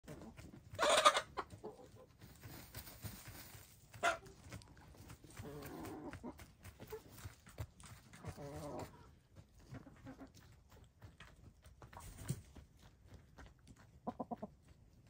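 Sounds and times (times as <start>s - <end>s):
hens calling: 0.1s - 2.2s, 3.9s - 7.3s, 8.1s - 10.4s.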